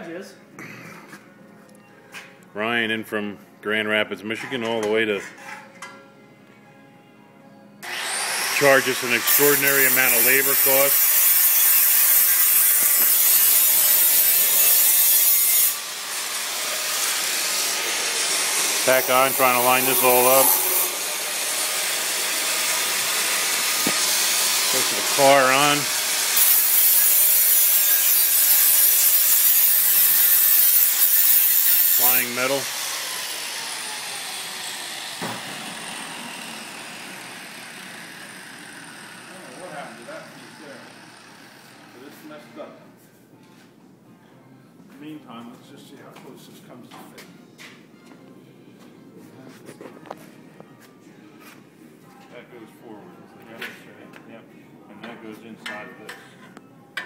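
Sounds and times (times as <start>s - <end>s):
grinder winding down: 7.8s - 10.7s, 31.9s - 42.0s
power grinder grinding metal: 7.8s - 42.1s.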